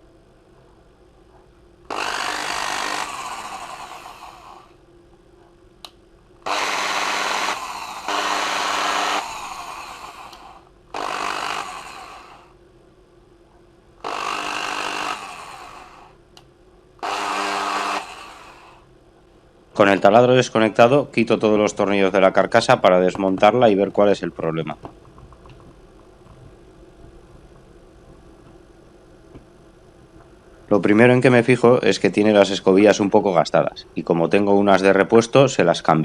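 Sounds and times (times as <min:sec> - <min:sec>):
electric drill running: 0:01.9 - 0:04.8, 0:06.4 - 0:12.6, 0:14.0 - 0:16.2, 0:17.0 - 0:18.9.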